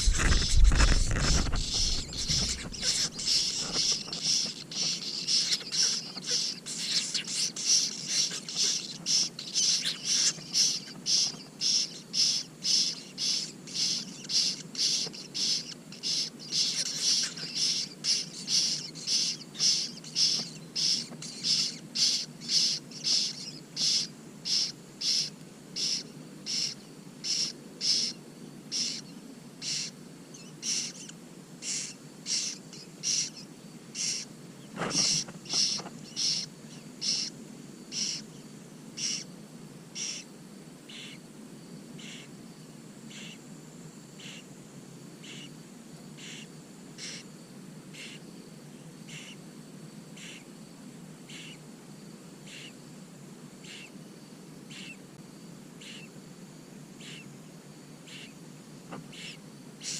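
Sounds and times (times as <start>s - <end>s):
low rumble: 0.0s - 3.0s
young cuckoo begging calls: 0.0s - 34.3s, 34.9s - 37.3s, 37.9s - 38.3s, 39.0s - 39.3s, 40.0s - 40.2s, 40.9s - 41.2s, 42.0s - 42.3s, 43.1s - 43.4s, 44.2s - 44.4s, 45.2s - 45.5s, 46.2s - 47.2s, 48.0s - 48.2s, 49.1s - 49.4s, 51.3s - 51.6s, 52.5s - 52.8s, 53.6s - 53.9s, 54.7s - 55.0s, 55.8s - 56.1s, 57.0s - 57.3s, 58.1s - 58.4s, 59.1s - 59.9s.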